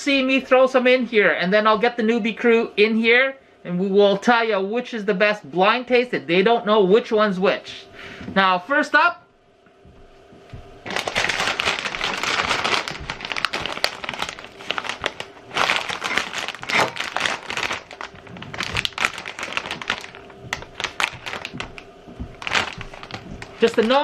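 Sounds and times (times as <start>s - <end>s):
plastic chip bag crinkling: 10.8s - 24.0s.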